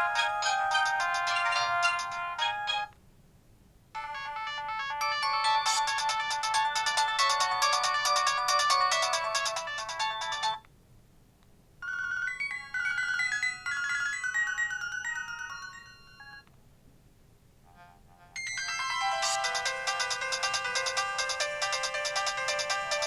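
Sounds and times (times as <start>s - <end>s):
electronic phone ringtones: 0.0s - 2.9s, 4.0s - 10.6s, 11.8s - 16.4s, 18.4s - 23.0s.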